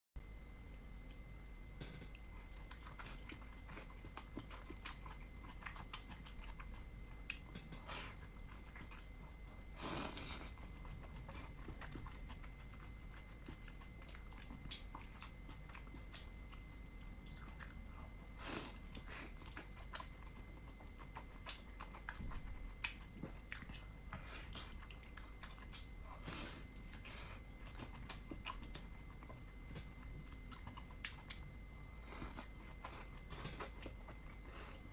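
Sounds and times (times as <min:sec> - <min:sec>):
person chewing: 0:01.8 - 0:34.9.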